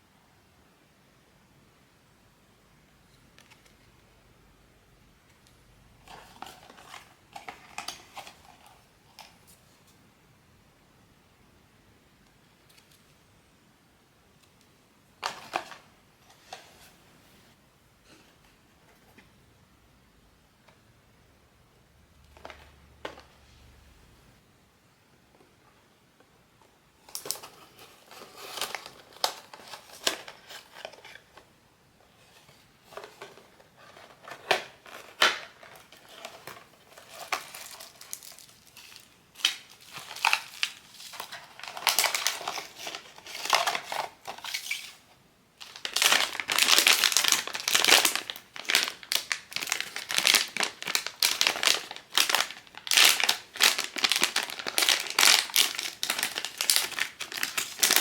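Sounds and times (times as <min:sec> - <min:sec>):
plastic packaging crinkling: 0:27.0 - 0:31.4, 0:32.8 - 0:58.0.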